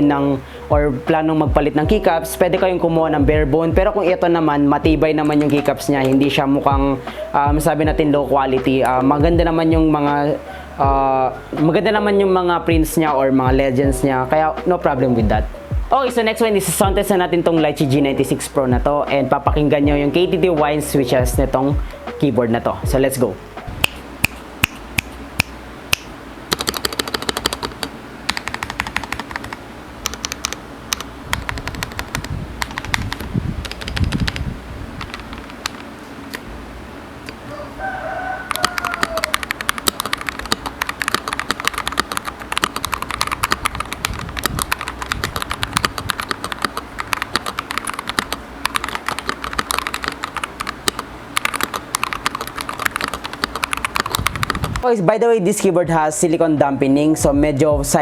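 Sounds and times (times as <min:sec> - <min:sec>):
rooster crowing: 0:10.3 - 0:11.9, 0:37.4 - 0:40.2
mechanical keyboard key clicks: 0:23.8 - 0:34.4, 0:38.5 - 0:54.8.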